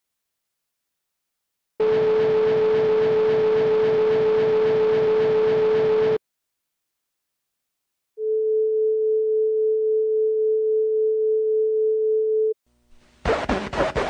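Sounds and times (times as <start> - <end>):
tuning fork tone: 8.2 - 12.6
crackly scratchy bursts and clicks: 12.8 - 14.0.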